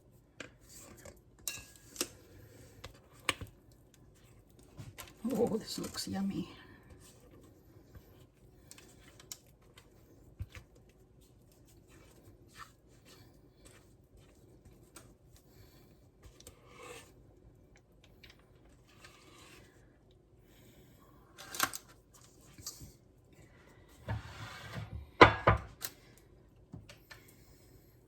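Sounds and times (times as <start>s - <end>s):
spatula scraping mixing bowl: 16.3s - 17.2s.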